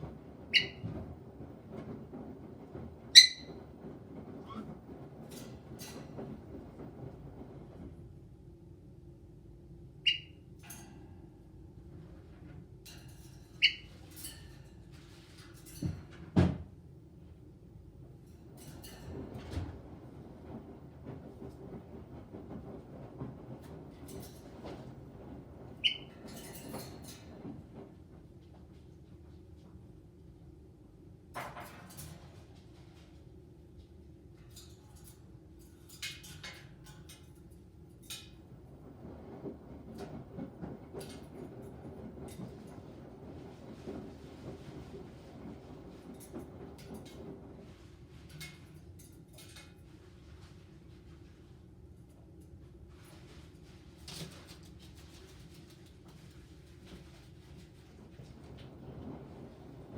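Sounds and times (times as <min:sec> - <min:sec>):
parrot shrill calls: 0:03.2 - 0:03.5.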